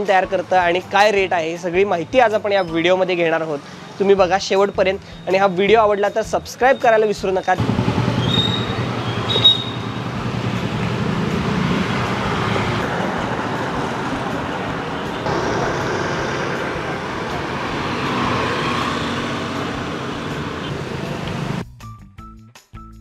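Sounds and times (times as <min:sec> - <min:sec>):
road traffic hum: 0:03.5 - 0:04.1, 0:07.6 - 0:21.6.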